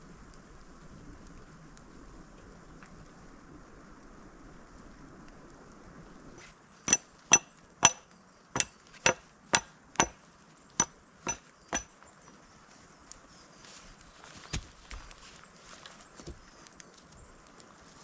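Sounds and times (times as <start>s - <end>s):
hammer strikes with metallic ring: 6.9s - 8.0s, 8.6s - 10.2s, 10.8s - 11.9s.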